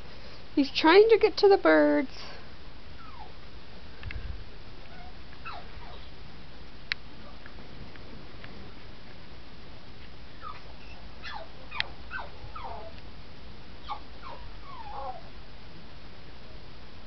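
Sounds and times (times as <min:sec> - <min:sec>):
dog whining: 0:03.0 - 0:03.4, 0:04.9 - 0:06.1, 0:10.4 - 0:13.0, 0:13.8 - 0:15.3.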